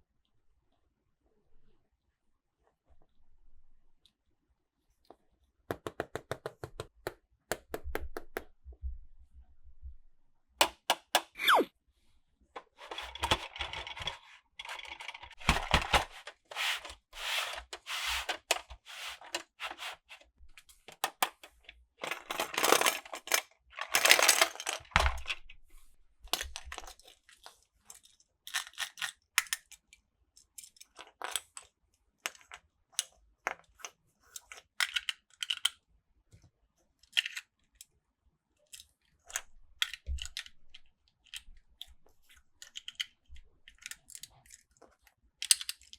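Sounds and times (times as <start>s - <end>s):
plastic toy track clattering: 12.6s - 20.2s, 20.9s - 25.4s
toy cars scraping: 12.8s - 20.3s.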